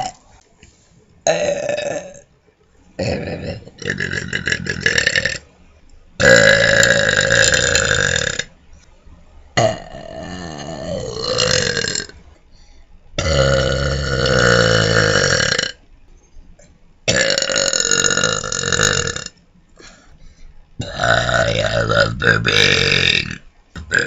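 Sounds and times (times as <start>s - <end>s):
person burping loudly: 0.0s - 0.2s, 1.2s - 2.2s, 3.0s - 5.4s, 6.2s - 8.5s, 9.6s - 12.2s, 13.2s - 15.8s, 17.1s - 19.9s, 20.8s - 24.0s.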